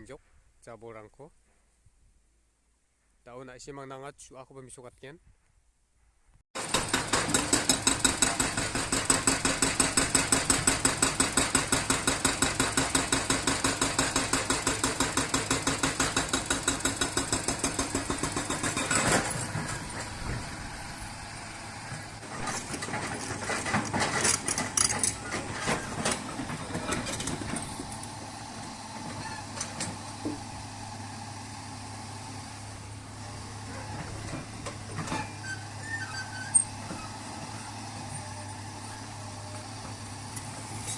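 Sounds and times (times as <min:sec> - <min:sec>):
knocks and clatter: 0:06.6 - 0:20.6, 0:22.2 - 0:28.1
heavy diesel engine pulsing: 0:06.6 - 0:40.9.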